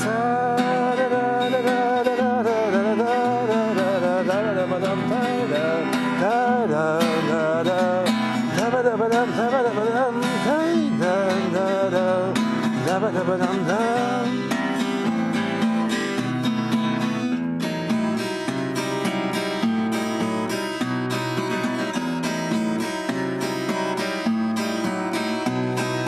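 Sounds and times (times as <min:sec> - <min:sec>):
wordless singing: 0:00.0 - 0:15.0
acoustic guitar strumming: 0:00.0 - 0:26.0.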